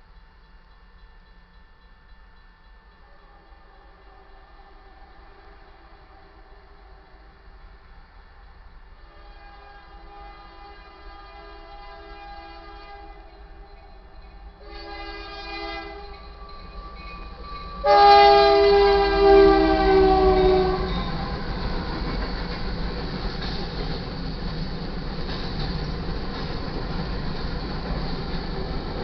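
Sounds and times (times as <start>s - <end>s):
rumble of rolling train: 0.0s - 29.0s
locomotive air horn blasts: 9.0s - 13.3s, 14.6s - 16.2s, 17.8s - 21.3s.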